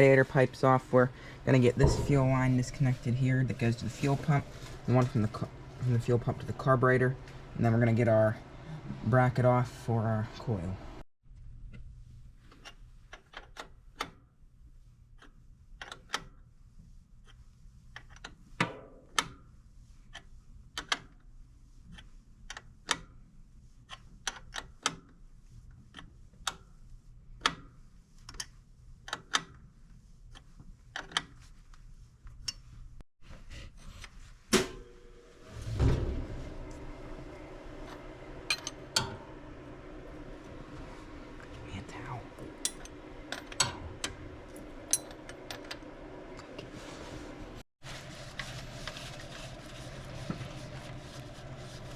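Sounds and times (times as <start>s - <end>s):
loud metallic clank: 1.8s - 2.8s, 34.5s - 37.5s.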